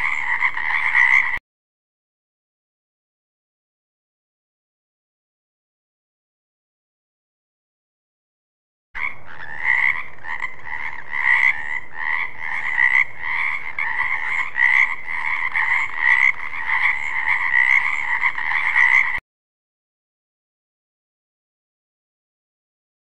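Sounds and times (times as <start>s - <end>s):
frogs croaking: 0.0s - 1.4s, 9.0s - 19.2s.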